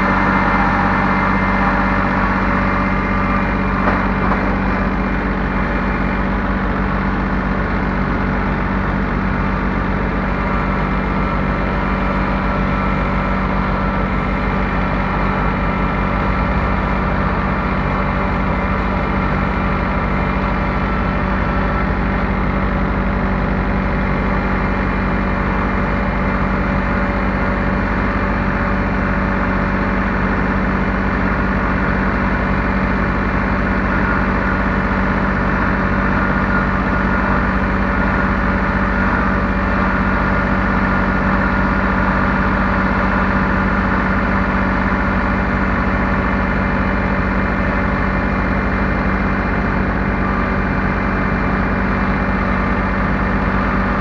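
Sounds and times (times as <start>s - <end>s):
heavy equipment engine running: 0.0s - 54.0s.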